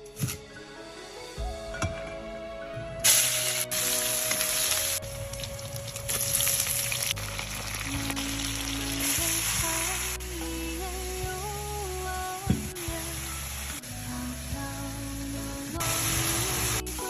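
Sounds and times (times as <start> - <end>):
soft background music: 0.0 - 17.0
food sizzling in a hot pan: 3.1 - 10.2, 15.1 - 17.0.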